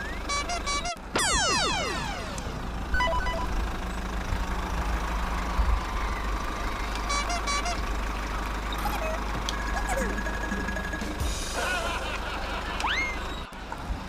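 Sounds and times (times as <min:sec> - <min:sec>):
electronic beeping: 0:00.0 - 0:03.6
vehicle engine rumble: 0:00.0 - 0:14.0.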